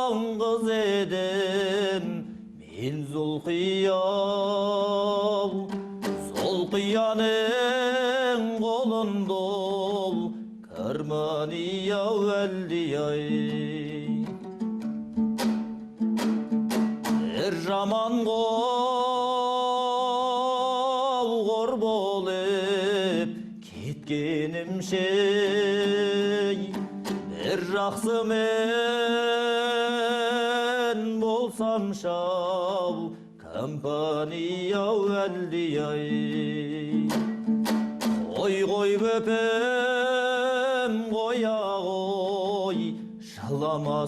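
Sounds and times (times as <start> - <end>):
person singing with vibrato: 0.0 - 44.0
plucked strings: 4.5 - 19.0, 21.7 - 40.0.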